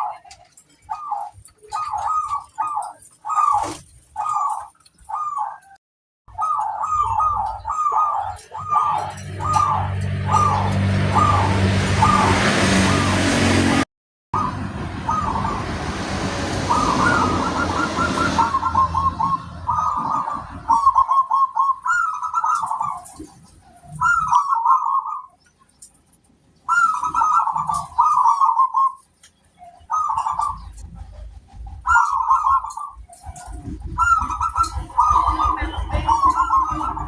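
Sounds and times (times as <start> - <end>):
dove cooing: 0.0 - 13.3, 14.4 - 15.8, 16.6 - 25.4, 26.7 - 29.0, 29.6 - 37.0
steady rushing noise: 14.4 - 20.8.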